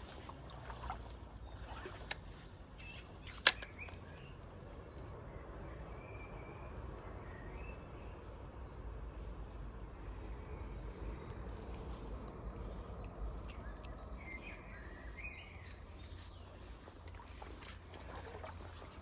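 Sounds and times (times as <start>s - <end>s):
light clicks: 0.0s - 4.7s.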